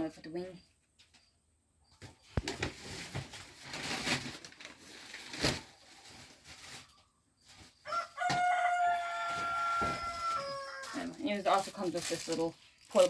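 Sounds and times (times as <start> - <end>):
rustling: 2.2 - 13.0.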